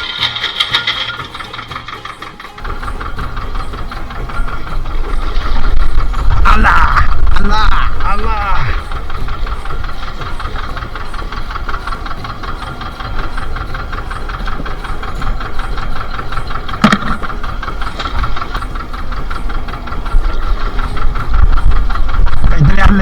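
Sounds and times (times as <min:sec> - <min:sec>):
boat engine running: 0:00.0 - 0:23.0
sharp knock: 0:16.8 - 0:17.2.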